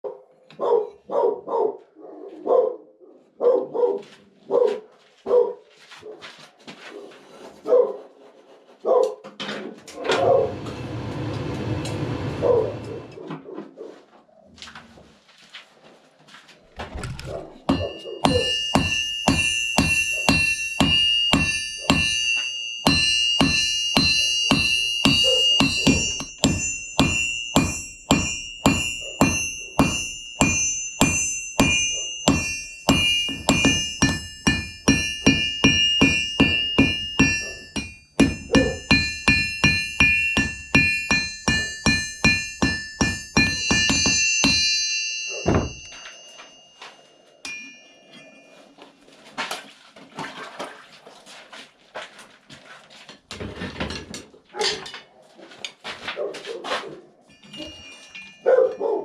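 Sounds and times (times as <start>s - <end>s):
hammer striking steel on anvil: 17.6s - 46.7s, 47.4s - 48.4s.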